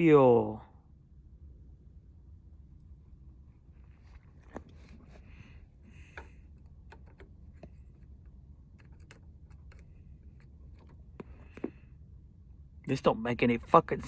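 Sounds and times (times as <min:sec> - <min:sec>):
light clicks and taps: 0:06.0 - 0:11.8.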